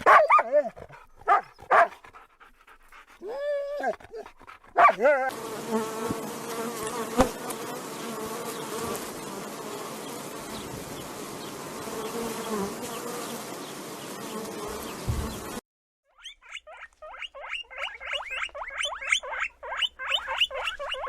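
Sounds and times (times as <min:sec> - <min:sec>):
flying insect buzzing: 0:05.3 - 0:15.6.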